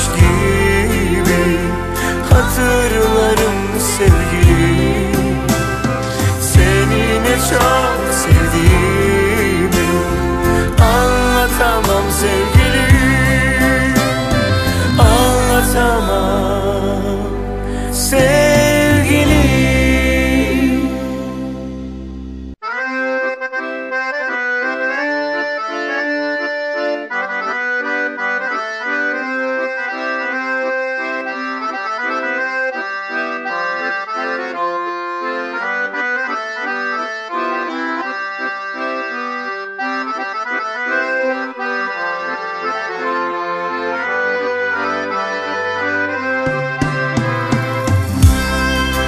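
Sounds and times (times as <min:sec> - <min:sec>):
low sustained bass line: 0:00.0 - 0:22.6, 0:48.0 - 0:49.0
accordion melody: 0:00.0 - 0:49.0.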